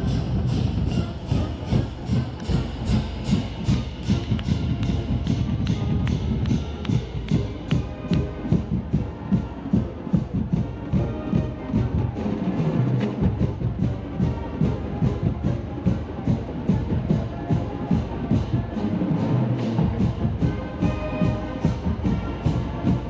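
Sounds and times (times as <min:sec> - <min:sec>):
drums striking a steady beat: 0:00.0 - 0:23.0
marching band playing: 0:00.0 - 0:23.0.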